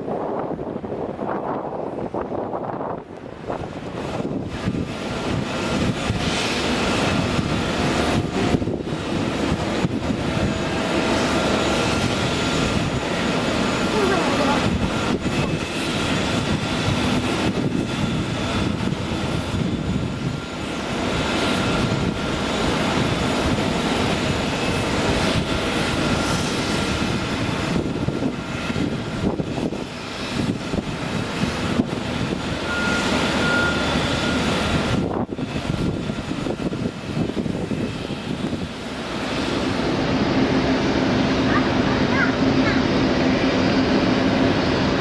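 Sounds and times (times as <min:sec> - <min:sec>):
jet engines rushing with whine: 0:00.0 - 0:45.0.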